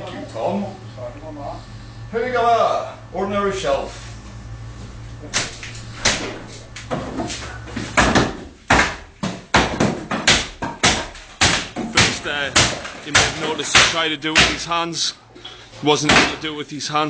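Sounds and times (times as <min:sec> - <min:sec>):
shelf knocking and banging: 0:06.1 - 0:14.6.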